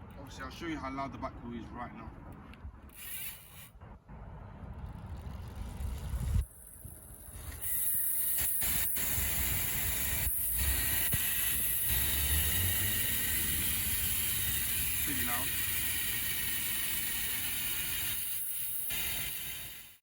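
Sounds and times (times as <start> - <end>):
bicycle freewheel ratcheting buzz: 2.9 - 3.8, 5.0 - 20.0.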